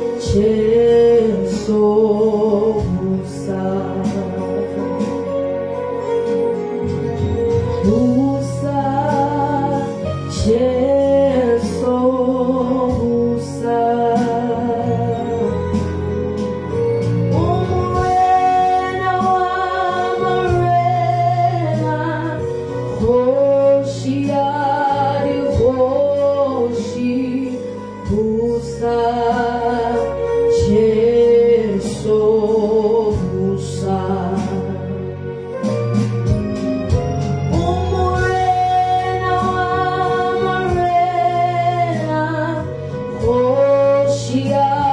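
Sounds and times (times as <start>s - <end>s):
woman singing with vibrato: 0.0s - 5.3s, 7.6s - 16.0s, 17.2s - 34.9s, 37.5s - 44.9s
instrumental backing with bass: 0.0s - 44.9s.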